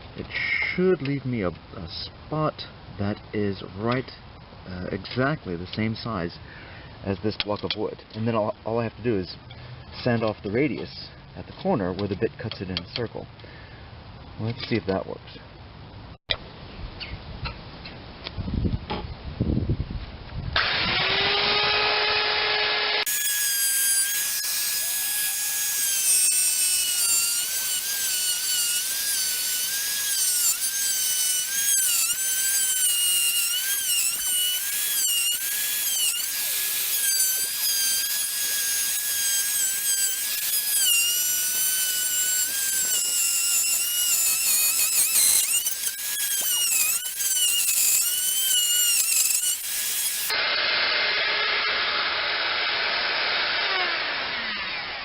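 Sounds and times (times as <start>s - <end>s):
electric router whining: 20.6s - 55.0s.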